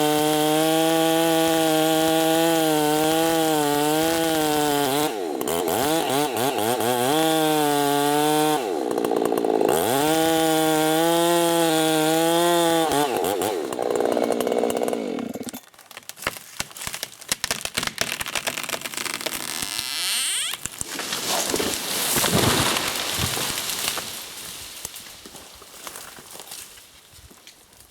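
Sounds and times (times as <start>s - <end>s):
chainsaw running at high revs: 0.0s - 15.6s.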